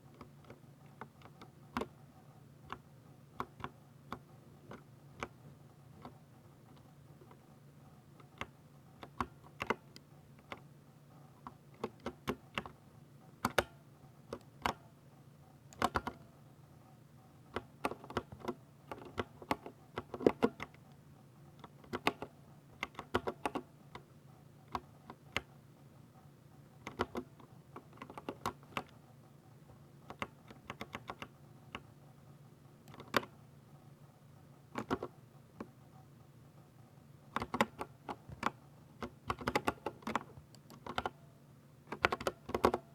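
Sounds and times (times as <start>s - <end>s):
mechanical keyboard typing: 8.2s - 10.7s, 11.4s - 12.8s, 13.4s - 14.8s, 15.7s - 16.3s, 17.5s - 20.8s, 21.6s - 25.5s, 26.8s - 29.0s, 30.1s - 31.9s, 32.8s - 33.4s, 34.7s - 35.7s, 37.3s - 41.2s, 41.9s - 42.9s.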